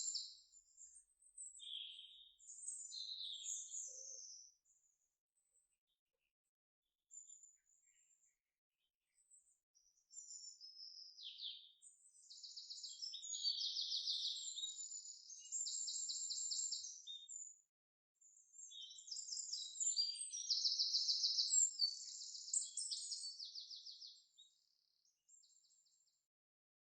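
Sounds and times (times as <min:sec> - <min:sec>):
songbird trilling song: 0:00.0 - 0:04.9, 0:09.2 - 0:17.5, 0:18.2 - 0:26.1.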